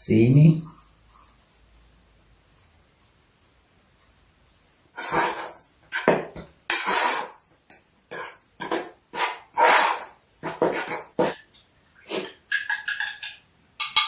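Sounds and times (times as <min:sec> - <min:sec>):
utensil scraping in mixing bowl: 0:05.0 - 0:07.5, 0:08.1 - 0:13.2.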